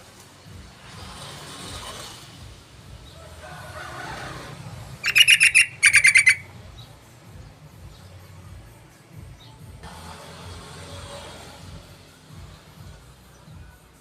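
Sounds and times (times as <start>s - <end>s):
bird chattering calls: 5.0s - 6.5s.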